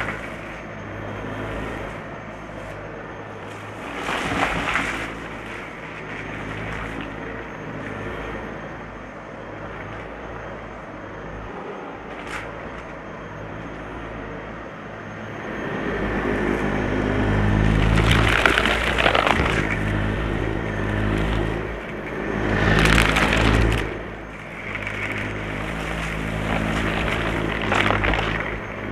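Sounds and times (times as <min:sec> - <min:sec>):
vacuum sucking up crunchy debris: 0:03.4 - 0:08.0, 0:17.1 - 0:28.9.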